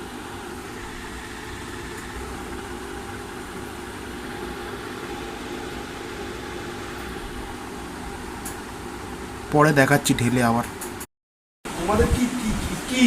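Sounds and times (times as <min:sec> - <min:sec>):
machine hum: 0:00.0 - 0:11.1
even hiss: 0:11.7 - 0:13.0.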